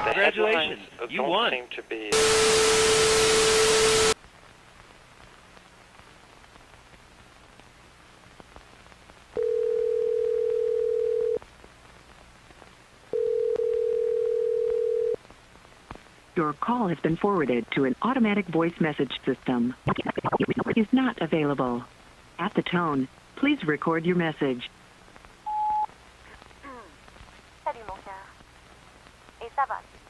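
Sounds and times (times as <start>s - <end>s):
static hiss: 0.0s - 30.0s
telephone ringback tone: 9.4s - 11.4s, 13.2s - 15.2s, 25.5s - 25.9s.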